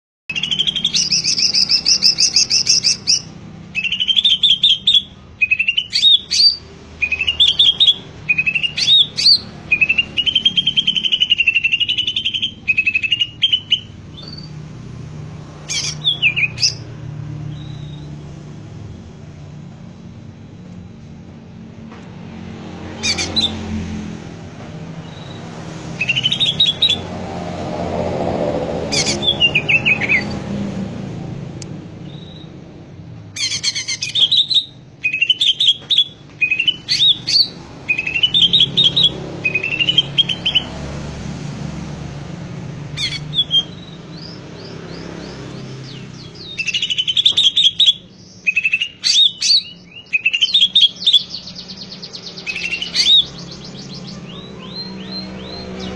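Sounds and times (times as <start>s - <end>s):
bird singing whistled notes: 0.3s - 14.6s, 15.7s - 16.9s, 17.5s - 18.2s, 25.0s - 25.4s, 26.0s - 27.0s, 28.8s - 30.4s, 32.0s - 32.6s, 33.4s - 40.7s, 43.0s - 55.9s.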